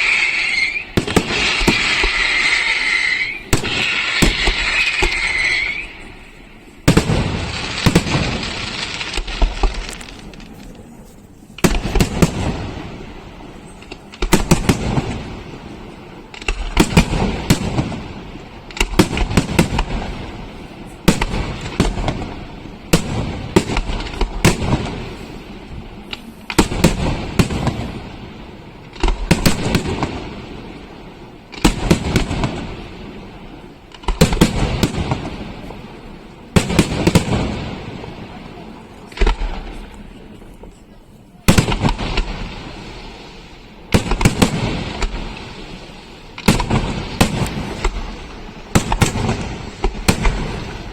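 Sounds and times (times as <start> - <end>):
firework shells bursting: 0.0 - 10.9
crackling of fireworks: 0.0 - 50.9.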